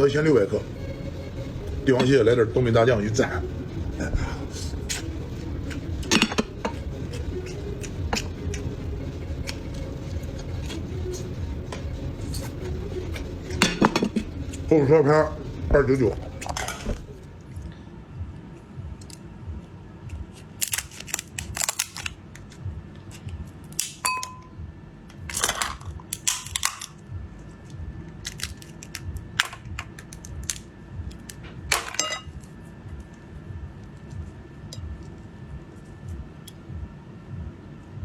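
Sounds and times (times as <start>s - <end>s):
crab shell cracking: 20.4s - 24.0s, 26.0s - 27.0s, 28.2s - 31.4s.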